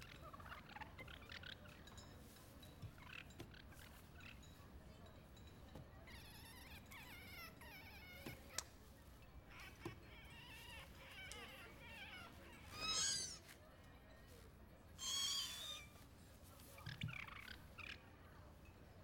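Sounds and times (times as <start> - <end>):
cartoon creature squeaky cries: 12.7 - 13.4, 15.0 - 15.9.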